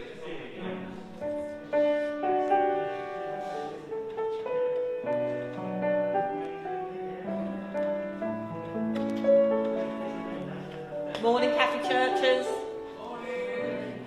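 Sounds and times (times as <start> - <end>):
slow piano music: 0.0 - 14.0.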